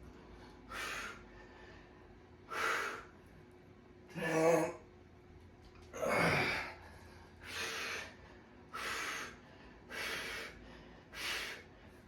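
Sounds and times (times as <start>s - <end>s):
man breathing heavily: 0.0s - 3.3s, 6.0s - 12.0s
man gasping: 6.0s - 8.2s.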